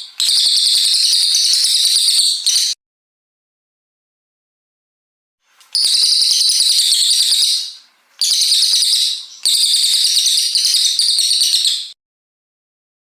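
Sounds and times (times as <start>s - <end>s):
songbird singing rapid high notes: 0.0s - 2.8s, 5.6s - 12.0s.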